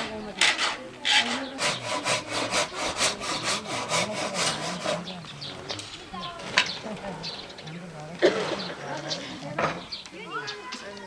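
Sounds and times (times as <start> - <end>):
hand saw cutting wood: 0.0 - 5.7.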